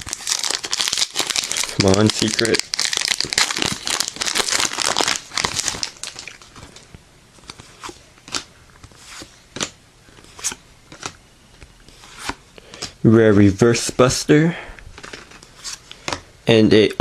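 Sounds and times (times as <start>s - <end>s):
foil wrapper crinkling: 0.0s - 6.9s.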